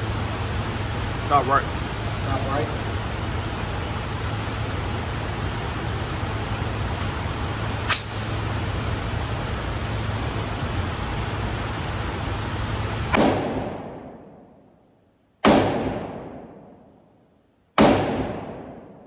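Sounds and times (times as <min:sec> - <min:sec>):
steady hum: 0:00.0 - 0:19.0
echoing gunshots: 0:13.1 - 0:14.7, 0:15.4 - 0:17.1, 0:17.8 - 0:19.0.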